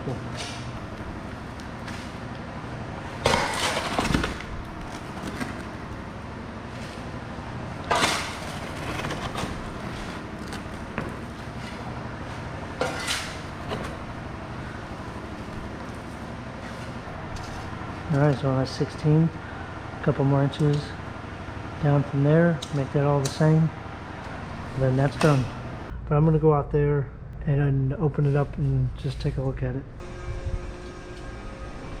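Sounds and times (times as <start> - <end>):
shovel scraping soil and concrete: 7.9 - 12.0.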